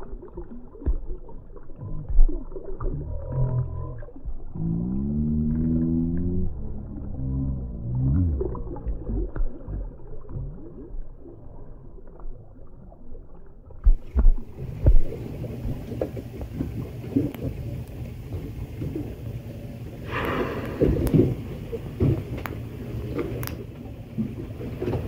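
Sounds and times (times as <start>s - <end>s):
humpback whale moan underwater: 1.8s - 10.6s
heavy low thumps: 20.1s - 22.3s
faint clicks and crackles: 22.0s - 25.0s.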